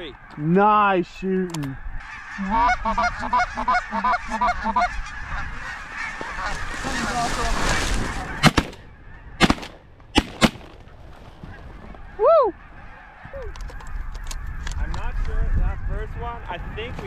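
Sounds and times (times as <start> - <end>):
geese honking: 1.7 - 14.7
sharp cracks: 8.4 - 8.8, 9.4 - 10.9.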